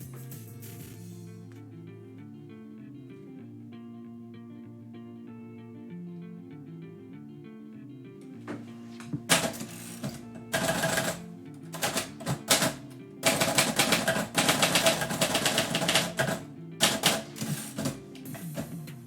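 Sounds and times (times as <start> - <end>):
guitar music: 0.0 - 19.0
typewriter key strikes: 9.3 - 11.2, 11.8 - 18.6.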